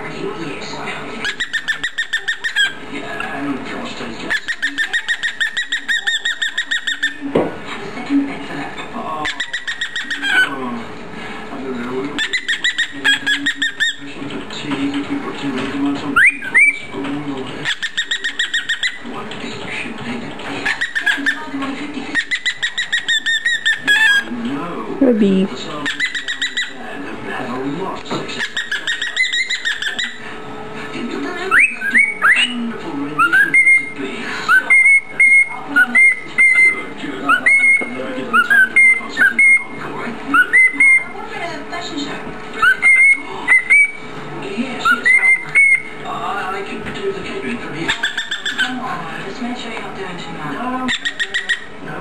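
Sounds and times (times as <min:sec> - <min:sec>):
cockatiel chirping: 0:01.2 - 0:02.8, 0:04.3 - 0:07.2, 0:09.2 - 0:10.5, 0:12.2 - 0:14.0, 0:16.2 - 0:16.9, 0:17.6 - 0:19.0, 0:20.6 - 0:21.4, 0:22.1 - 0:24.3, 0:25.8 - 0:26.8, 0:28.4 - 0:30.2, 0:31.5 - 0:32.6, 0:33.2 - 0:41.2, 0:42.6 - 0:44.0, 0:44.8 - 0:46.0, 0:47.9 - 0:48.8, 0:50.9 - 0:51.7
cockatiel whistling chirps: 0:31.5 - 0:32.6, 0:33.2 - 0:41.1, 0:42.6 - 0:44.0, 0:44.8 - 0:45.9.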